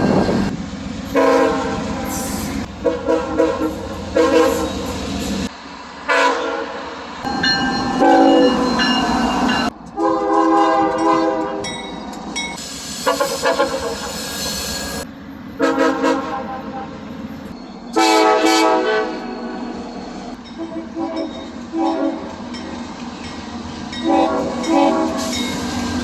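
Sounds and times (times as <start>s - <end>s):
train rumbling: 0.0s - 26.0s
train horn blasts: 1.1s - 4.9s, 6.1s - 6.8s, 7.9s - 8.6s, 10.0s - 11.7s, 15.6s - 17.0s, 17.9s - 19.6s, 20.5s - 22.4s, 24.0s - 25.4s.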